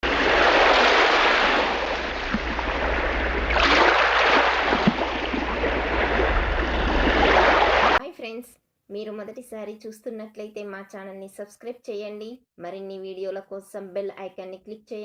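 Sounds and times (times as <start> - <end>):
loud rushing noise: 0.0 - 8.0.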